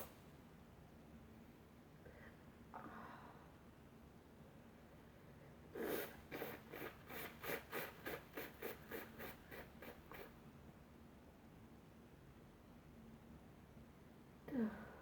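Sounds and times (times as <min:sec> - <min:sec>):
quick rubbing strokes: 0:05.8 - 0:10.4.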